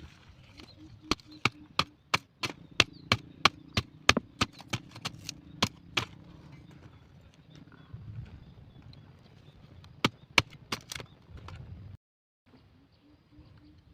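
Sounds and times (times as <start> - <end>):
wood being chopped: 1.1 - 6.2, 10.0 - 11.0.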